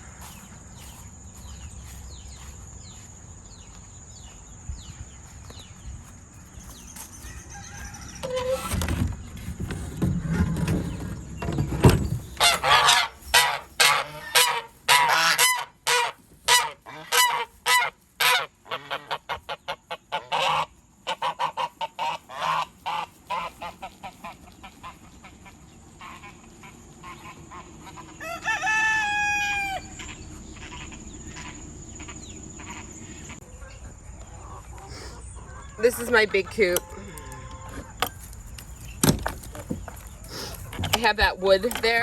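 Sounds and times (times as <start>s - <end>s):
geese honking: 12.4s - 38.9s.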